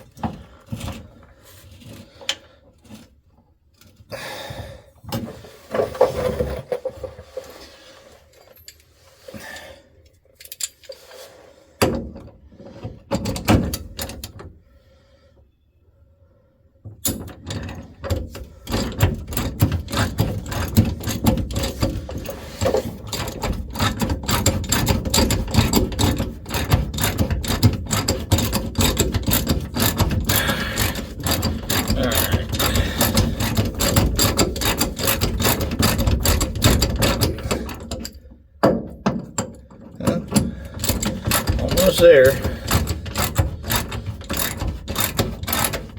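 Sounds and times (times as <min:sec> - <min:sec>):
ratchet wrench clicking: 0:23.1 - 0:37.6, 0:40.8 - 0:45.9.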